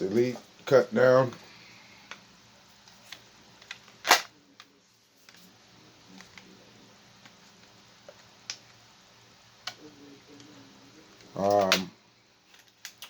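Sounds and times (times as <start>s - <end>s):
toy blaster firing crack: 4.0s - 4.4s.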